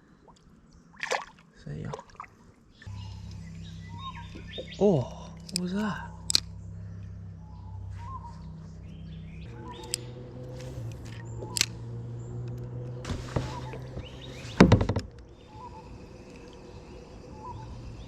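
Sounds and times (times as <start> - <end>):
small birds chirping: 0.4 - 18.0
steady low hum: 2.7 - 18.0
single clicks: 5.4 - 6.5, 9.6 - 13.0.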